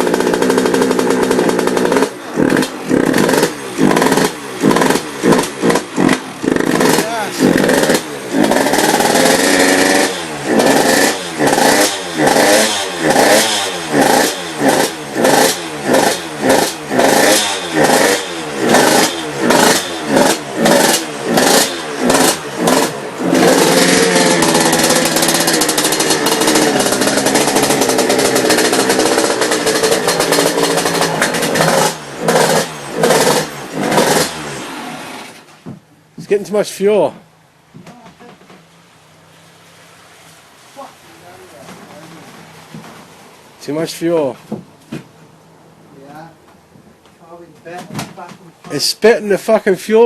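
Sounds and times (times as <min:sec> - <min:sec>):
two-stroke engine revving: 0:00.0 - 0:35.5.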